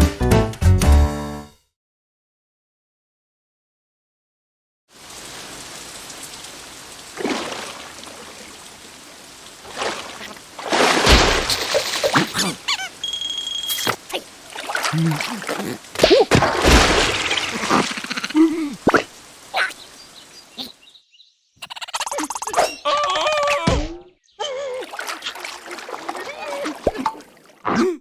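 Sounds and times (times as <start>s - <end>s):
water splashing and trickling: 4.9s - 20.9s, 24.4s - 27.7s
squeaky cartoon vocal sounds: 12.2s - 14.3s, 17.5s - 19.8s, 21.6s - 24.9s.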